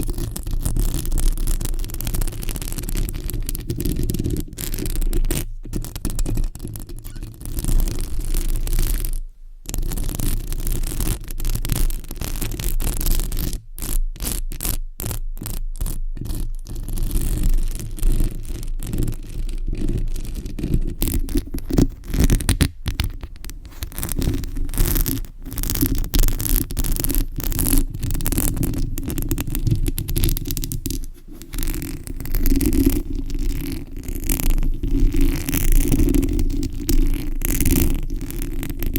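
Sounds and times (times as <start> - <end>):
fingernails scratching a surface: 20.6 - 37.3.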